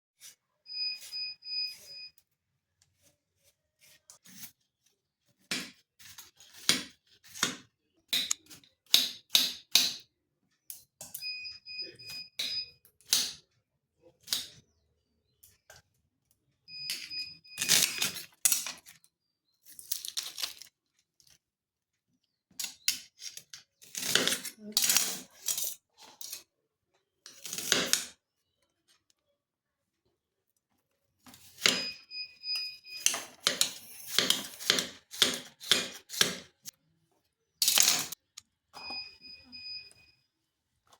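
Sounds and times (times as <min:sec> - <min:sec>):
electronic beeps: 0:00.7 - 0:02.2, 0:11.2 - 0:12.8, 0:16.7 - 0:18.2, 0:31.6 - 0:33.4, 0:38.8 - 0:40.2.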